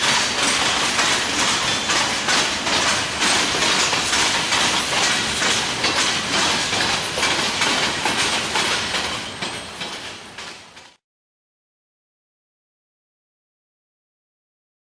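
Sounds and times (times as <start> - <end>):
freight train rumble and rattle: 0.0 - 11.0
train wheels clicking over rail joints: 0.0 - 11.0.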